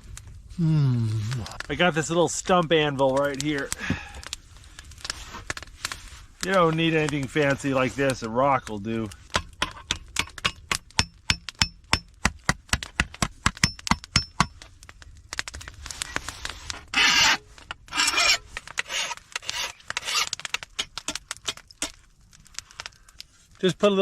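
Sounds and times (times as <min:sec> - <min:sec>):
file rasping metal edges: 0:16.9 - 0:20.4.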